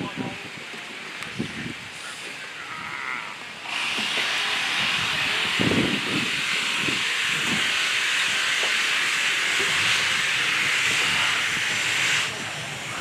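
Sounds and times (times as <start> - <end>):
wind buffeting microphone: 0.0 - 3.0, 4.6 - 13.0
air hissing under pressure: 3.6 - 12.7.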